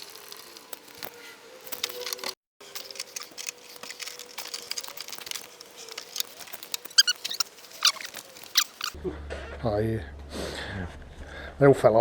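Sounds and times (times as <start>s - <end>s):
clicks and rattles of parts: 0.2s - 9.0s
short high squeaks: 1.1s - 9.0s.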